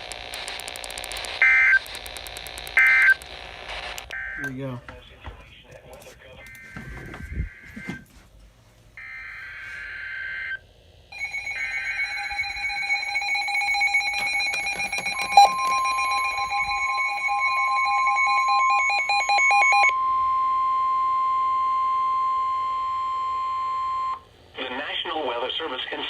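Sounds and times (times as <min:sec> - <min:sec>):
screechy digital data bursts: 0:00.0 - 0:04.8, 0:11.1 - 0:19.9
buzzy pulsing alarm tone: 0:01.3 - 0:04.8, 0:06.3 - 0:08.0, 0:09.0 - 0:24.2
steady single-pitch tone: 0:11.1 - 0:24.3.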